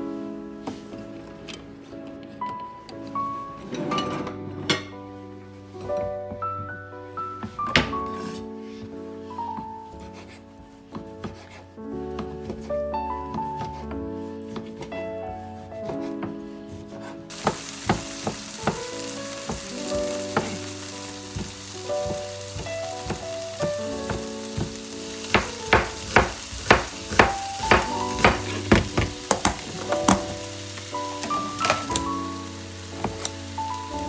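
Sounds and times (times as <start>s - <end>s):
background music: 0.0s - 34.0s
spatula scraping pan: 8.1s - 33.9s
food sizzling in frying pan: 17.3s - 34.0s.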